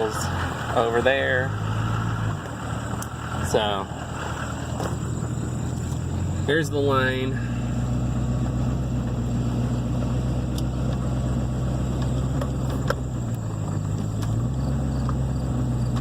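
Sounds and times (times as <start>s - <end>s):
man talking: 0.0s - 1.6s, 3.4s - 4.0s, 6.4s - 7.6s
pickup truck engine running: 0.0s - 16.0s.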